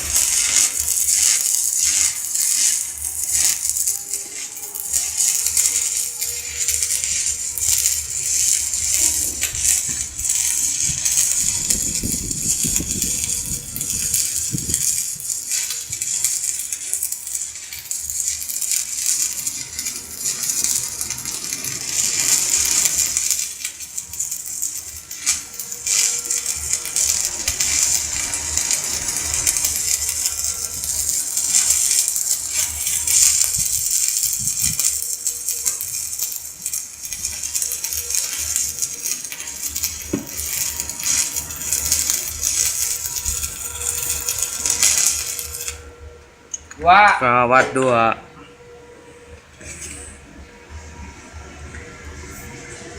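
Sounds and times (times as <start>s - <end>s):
welding arc crackling and sizzling: 0.0s - 52.9s.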